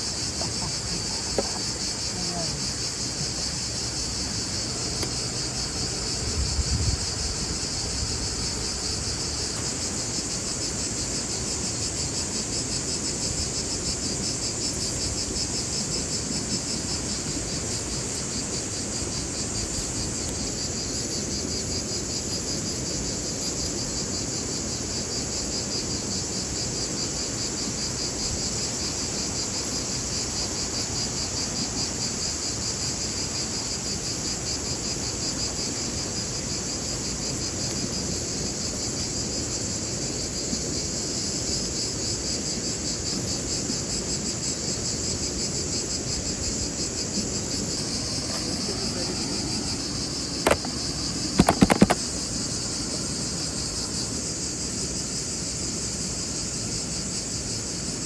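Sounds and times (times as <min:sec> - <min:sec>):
crickets chirping: 0:00.0 - 0:58.0.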